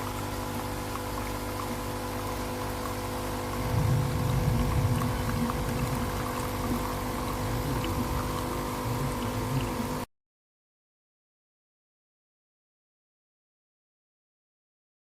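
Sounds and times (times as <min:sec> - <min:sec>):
coffee machine pump humming: 0:00.0 - 0:10.1
liquid trickling: 0:00.0 - 0:10.1.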